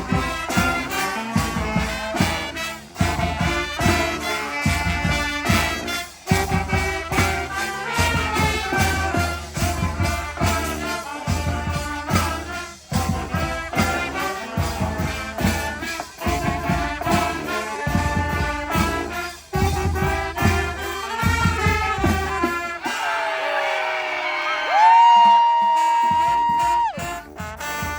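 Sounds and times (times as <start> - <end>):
brass band playing: 0.0 - 27.9.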